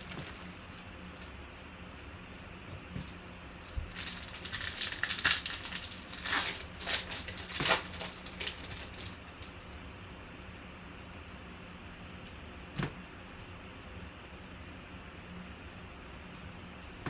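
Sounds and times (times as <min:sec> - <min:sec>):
card pack wrappers crinkling: 0:00.0 - 0:01.4, 0:03.0 - 0:09.5.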